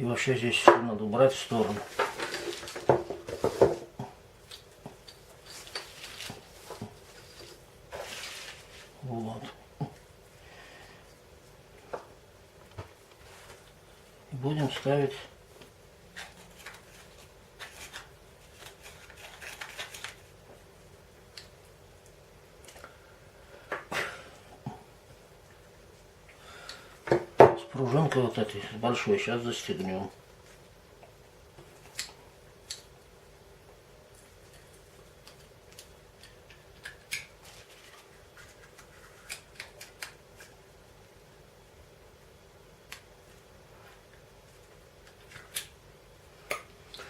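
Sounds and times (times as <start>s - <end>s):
faint steady hum: 0.0s - 47.0s
rustling: 5.3s - 9.1s.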